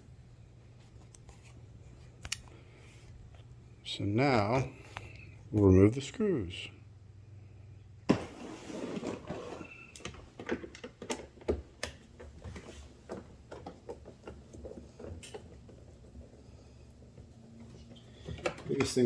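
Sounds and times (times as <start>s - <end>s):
brief scrape: 8.1s - 9.9s.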